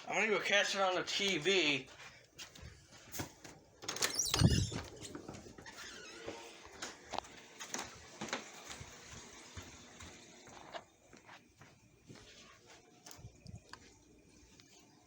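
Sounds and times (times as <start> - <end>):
footsteps: 0.0 - 14.9.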